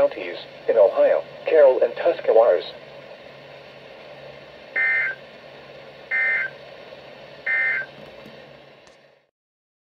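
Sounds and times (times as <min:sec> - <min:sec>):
steady background hiss: 0:00.0 - 0:09.3
digital warble bursts: 0:04.8 - 0:05.2, 0:06.1 - 0:06.5, 0:07.5 - 0:07.9.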